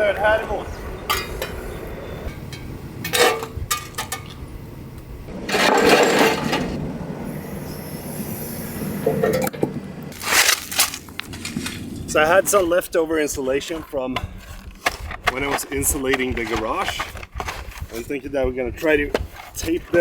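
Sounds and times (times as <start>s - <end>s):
wind rumble on microphone: 11.3s - 20.0s.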